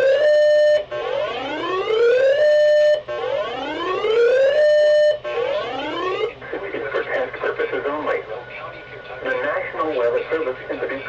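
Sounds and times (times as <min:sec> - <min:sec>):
electronic siren whooping: 0:00.0 - 0:06.4.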